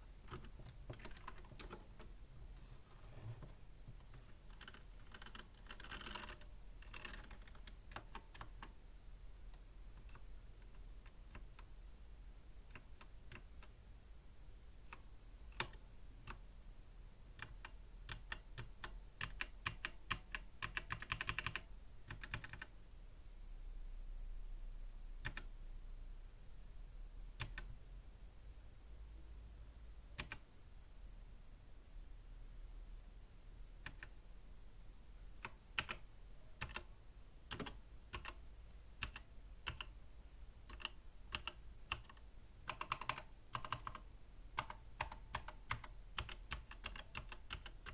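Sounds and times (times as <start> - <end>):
mechanical keyboard typing: 0.3 - 2.1, 4.5 - 8.7, 14.9 - 16.4, 17.4 - 22.7, 25.2 - 25.5, 27.4 - 27.7, 30.2 - 30.4, 33.8 - 34.2, 35.4 - 36.0, 36.6 - 36.9, 37.5 - 38.4, 39.0 - 40.0, 40.7 - 47.9.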